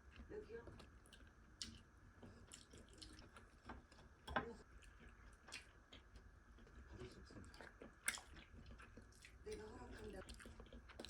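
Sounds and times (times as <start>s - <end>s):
chewing: 0.0s - 11.0s.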